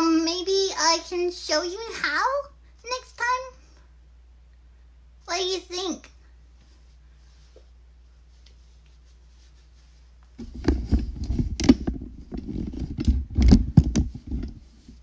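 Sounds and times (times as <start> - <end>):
handling noise on microphone: 6.6 - 15.0.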